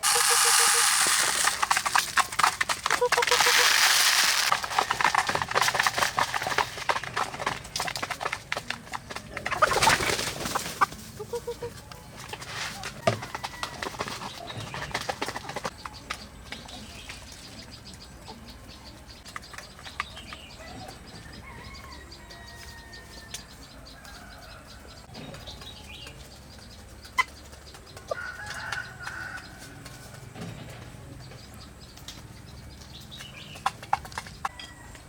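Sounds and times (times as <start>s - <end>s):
wings flapping: 0.0s - 15.8s
chickens clucking: 0.0s - 35.0s.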